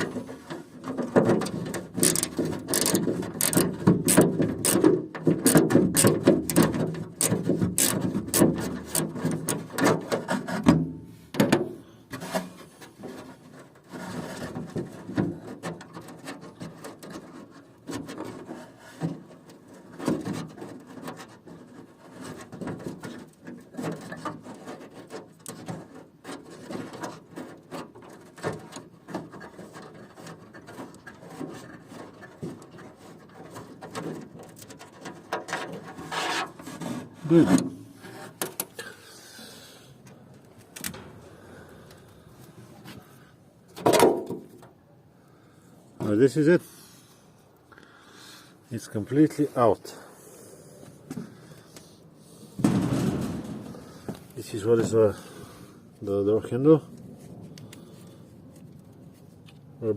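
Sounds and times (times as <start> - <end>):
metal parts scraping: 0.2 - 10.6
hand ratchet clicking: 2.0 - 4.8, 7.2 - 9.0.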